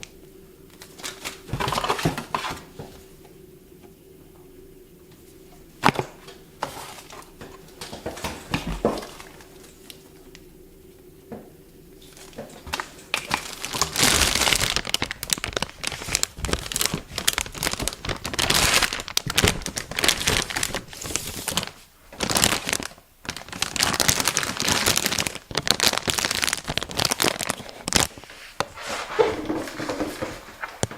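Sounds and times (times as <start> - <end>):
packaging crinkling and tearing: 0.7 - 2.9, 12.0 - 28.2.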